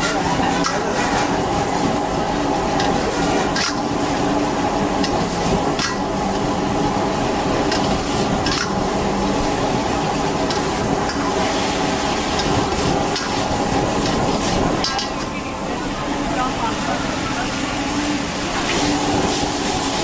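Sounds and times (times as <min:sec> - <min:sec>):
metal spatula scraping wok: 0:00.0 - 0:15.5
steady hum: 0:00.0 - 0:20.0
beef sizzling in a wok: 0:00.4 - 0:15.3, 0:18.6 - 0:20.0
spatula clanking against wok: 0:07.6 - 0:09.0, 0:12.0 - 0:15.4.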